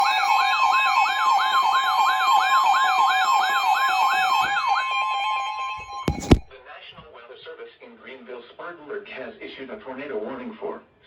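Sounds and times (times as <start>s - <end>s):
siren sweep rising and falling: 0.0s - 6.4s
two-tone alarm tone: 0.0s - 6.5s.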